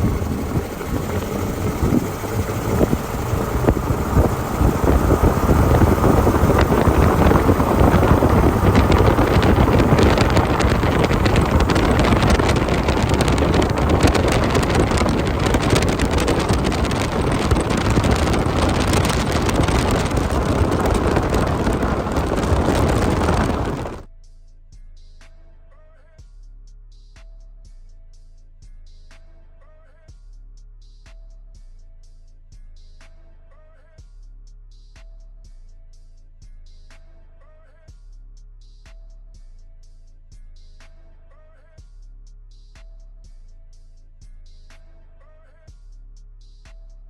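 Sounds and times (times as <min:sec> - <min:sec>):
wind buffeting microphone: 0:00.0 - 0:24.0
car engine and road noise: 0:00.0 - 0:24.1.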